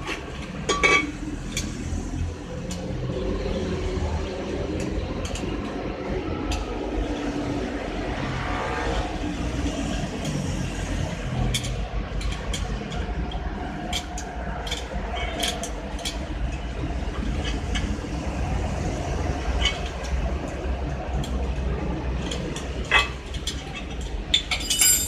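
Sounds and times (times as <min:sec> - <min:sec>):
sharp metallic clicks and knocks: 0:11.2 - 0:25.0.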